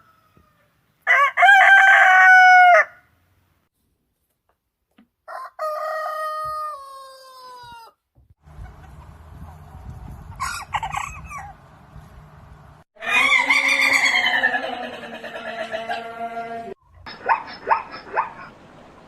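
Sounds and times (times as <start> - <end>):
rooster crowing: 0.0 - 3.1, 5.3 - 8.0, 13.0 - 16.7.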